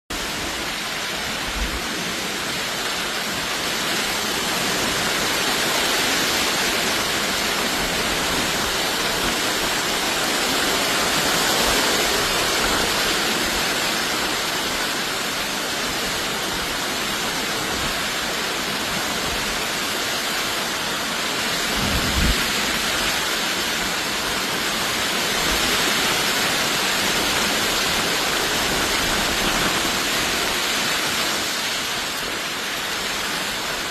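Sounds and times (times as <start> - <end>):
heavy rain pouring: 0.1 - 33.9.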